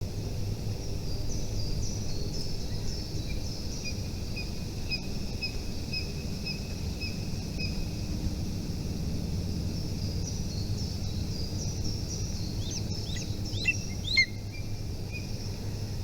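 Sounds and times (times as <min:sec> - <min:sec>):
small bird chirping: 0:11.3 - 0:15.3.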